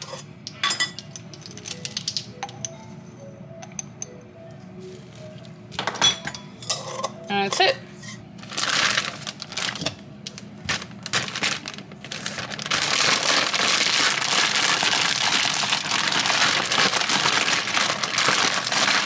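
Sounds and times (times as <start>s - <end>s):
crinkling and crackling: 8.4s - 19.0s.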